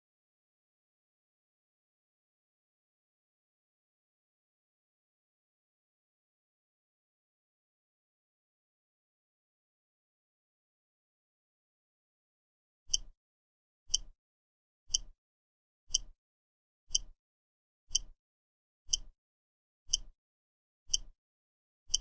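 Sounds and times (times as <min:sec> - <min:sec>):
timer ticking clicks: 0:12.9 - 0:13.1, 0:13.9 - 0:14.1, 0:14.9 - 0:15.1, 0:15.9 - 0:16.1, 0:16.9 - 0:17.2, 0:17.9 - 0:18.2, 0:18.9 - 0:19.1, 0:19.9 - 0:20.1, 0:20.9 - 0:21.1.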